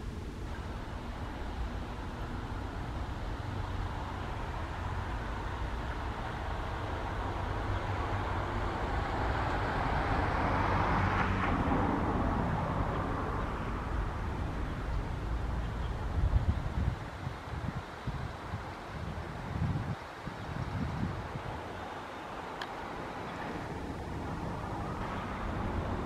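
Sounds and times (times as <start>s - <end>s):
vehicle passing by: 0.0s - 16.9s, 22.8s - 26.0s
steady low rumble: 23.0s - 26.0s.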